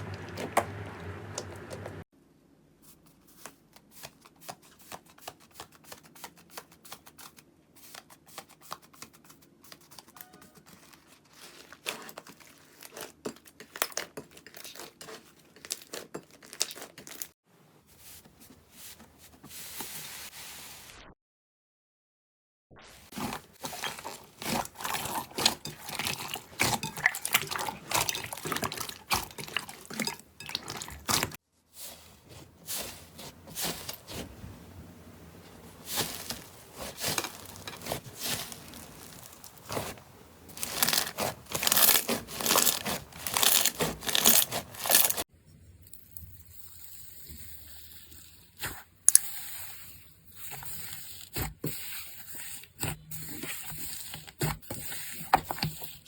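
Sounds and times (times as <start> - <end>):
slime crackling and popping: 36.0 - 45.2.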